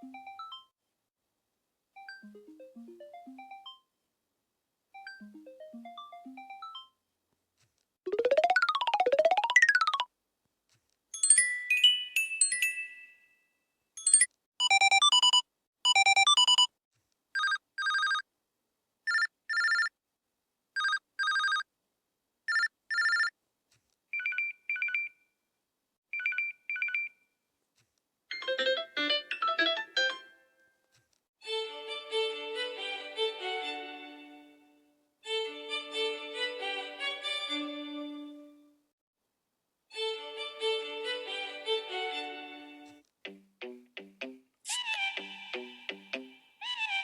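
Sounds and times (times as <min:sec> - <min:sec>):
phone ringtone tune: 0:02.0 - 0:03.9, 0:05.0 - 0:07.0, 0:08.1 - 0:10.1, 0:14.0 - 0:16.7, 0:28.3 - 0:30.6
short electronic beeps: 0:14.6 - 0:16.7.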